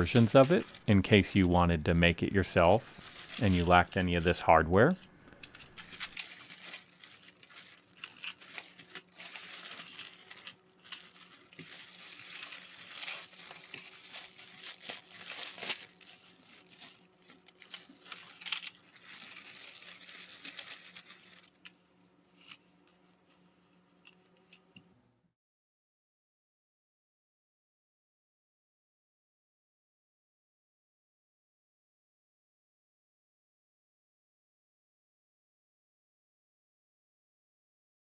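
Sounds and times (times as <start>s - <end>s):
rustling and crinkling handling noise: 0.0s - 24.8s.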